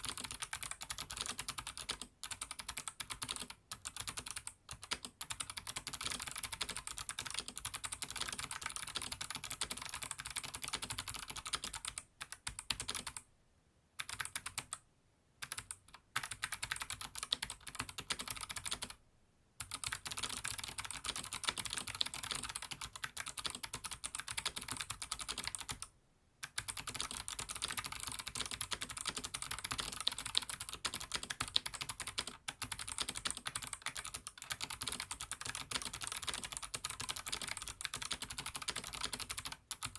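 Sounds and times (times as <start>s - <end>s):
typing on mechanical keyboard: 0.0s - 13.3s, 14.0s - 14.8s, 15.4s - 19.0s, 19.6s - 39.9s.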